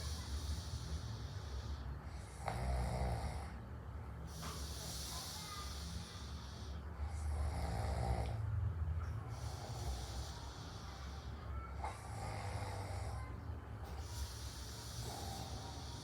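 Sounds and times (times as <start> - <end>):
hissing breath: 0.0 - 2.3, 4.3 - 7.3, 9.2 - 16.0
man snoring: 2.3 - 3.6, 7.1 - 8.4, 14.1 - 16.0.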